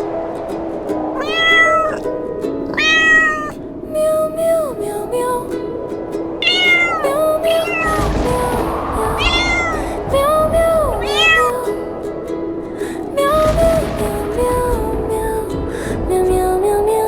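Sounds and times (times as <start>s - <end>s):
background music: 0.0s - 17.0s
cat meowing: 1.2s - 2.0s, 2.7s - 3.6s, 6.4s - 8.0s, 9.2s - 9.8s, 11.0s - 11.5s.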